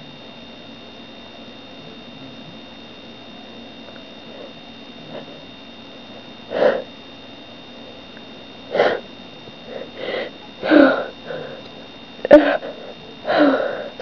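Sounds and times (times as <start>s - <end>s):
person sneezing: 6.5s - 6.9s, 8.7s - 9.0s, 12.3s - 12.9s
person sniffing: 6.5s - 6.9s, 8.7s - 9.0s.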